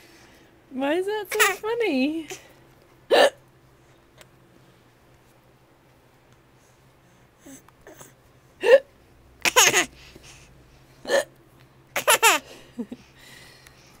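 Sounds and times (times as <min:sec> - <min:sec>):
person hiccuping: 0:03.1 - 0:03.4.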